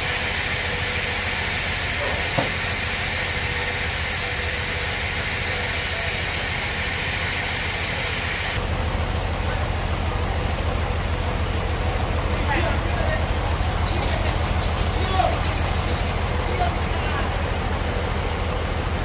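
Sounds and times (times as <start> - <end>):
band saw hissing: 0.0 - 8.6
engine throbbing: 0.0 - 19.0.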